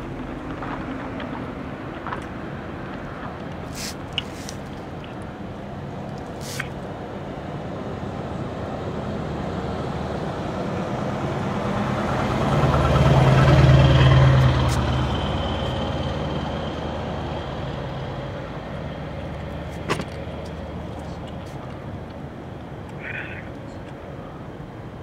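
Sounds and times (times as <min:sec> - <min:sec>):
vehicle passing by: 0:08.8 - 0:21.3.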